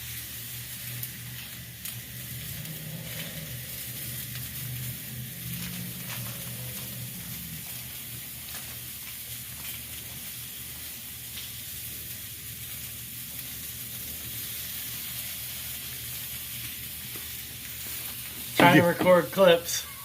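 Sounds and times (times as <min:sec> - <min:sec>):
food sizzling: 0:00.0 - 0:20.0
low hum: 0:00.7 - 0:08.4.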